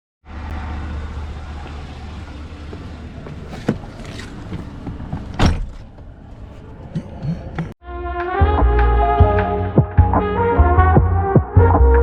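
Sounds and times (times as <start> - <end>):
car road and engine rumble: 0.2 - 7.8.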